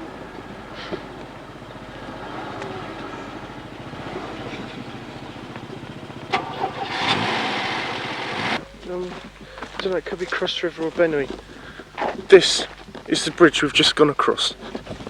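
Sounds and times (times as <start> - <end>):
vehicle engine labouring: 0.0 - 8.6
loud burst of noise: 6.3 - 8.6.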